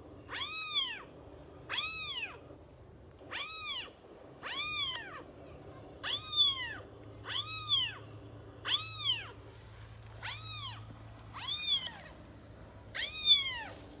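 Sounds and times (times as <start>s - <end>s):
kitten meowing: 0.3s - 1.0s, 1.7s - 2.4s, 3.3s - 5.2s, 6.0s - 8.0s, 8.6s - 9.3s, 10.2s - 10.8s, 11.4s - 12.1s, 13.0s - 13.7s.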